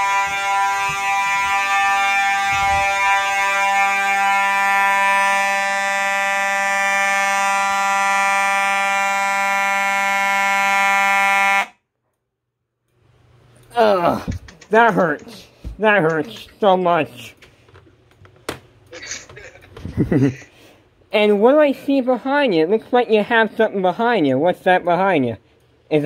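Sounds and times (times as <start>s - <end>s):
fire alarm horn buzzing: 0.0s - 11.9s.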